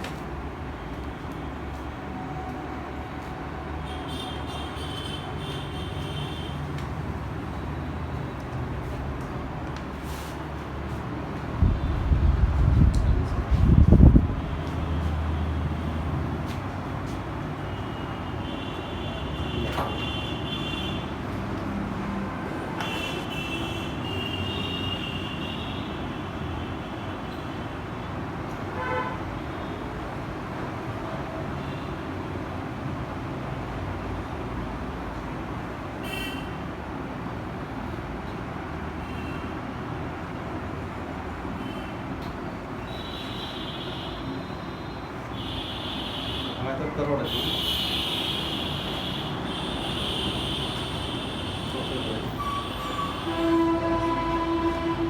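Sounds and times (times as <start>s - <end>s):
traffic noise: 0.0s - 55.0s
steady high tone: 51.8s - 55.0s.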